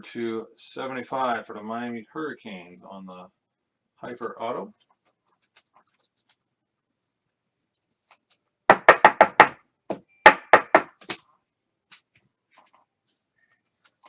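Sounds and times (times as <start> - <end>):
sharp knocks on hard surface: 8.7 - 11.2.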